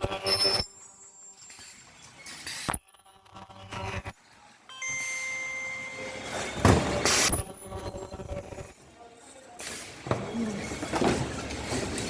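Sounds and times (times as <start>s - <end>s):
steady high tone: 0.0s - 2.0s, 2.7s - 6.5s, 7.2s - 8.8s
loud hiss of air: 7.0s - 7.4s.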